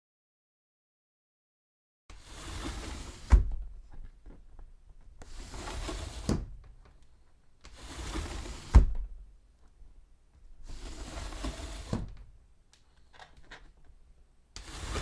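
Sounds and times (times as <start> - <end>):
sliding door on wooden track: 2.1 - 3.7, 5.2 - 6.8, 7.7 - 9.2, 10.6 - 12.3, 14.6 - 15.0.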